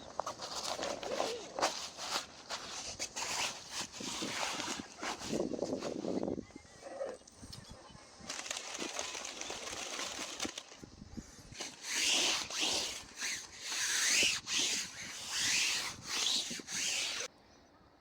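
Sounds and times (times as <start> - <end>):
hand saw cutting firewood: 0.3 - 5.7, 11.6 - 17.3.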